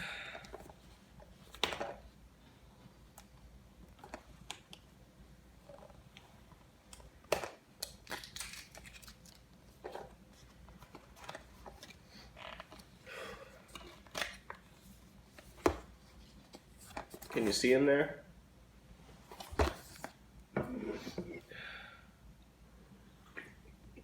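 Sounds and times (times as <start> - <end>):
packaging clicks scrapes and rustles: 7.8 - 10.1.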